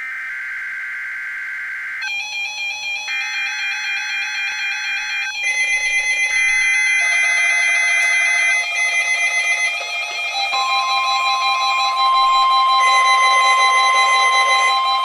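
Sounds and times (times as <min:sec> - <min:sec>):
buzzing electronic data tones: 0:05.2 - 0:15.0.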